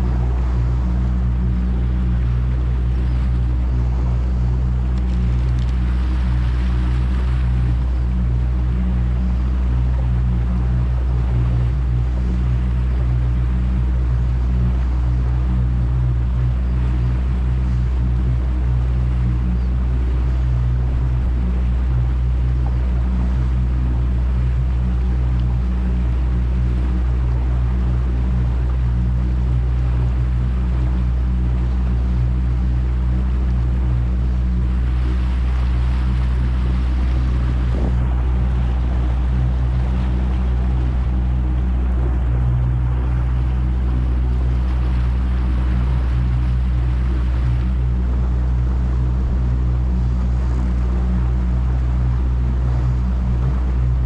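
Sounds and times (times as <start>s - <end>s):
boat motor humming: 0.0s - 54.0s.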